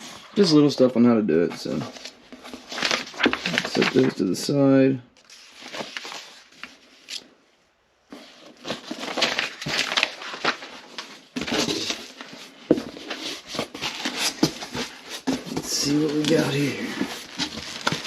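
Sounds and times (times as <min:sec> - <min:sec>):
packing material rustling: 0:01.9 - 0:04.4, 0:05.2 - 0:07.2, 0:08.1 - 0:18.0.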